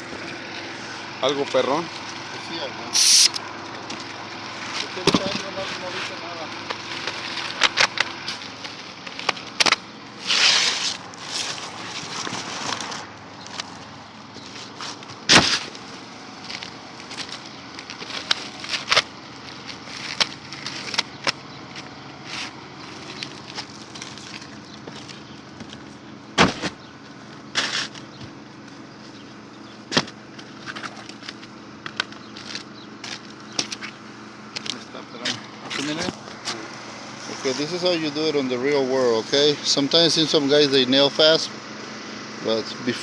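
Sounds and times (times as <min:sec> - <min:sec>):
steady low hum: 0:00.0 - 0:43.0
shingles being handled: 0:03.9 - 0:26.7, 0:27.5 - 0:28.8.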